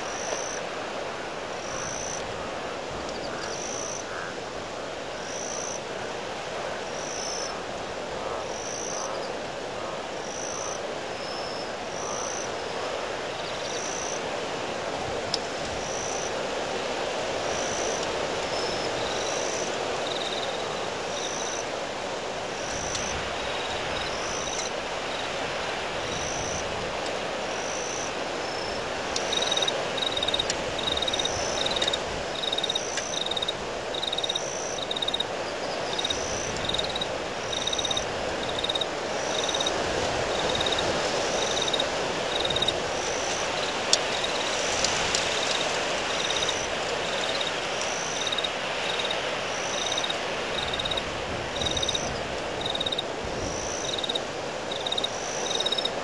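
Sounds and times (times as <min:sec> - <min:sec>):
wind gusting: 0:28.8 - 0:49.1.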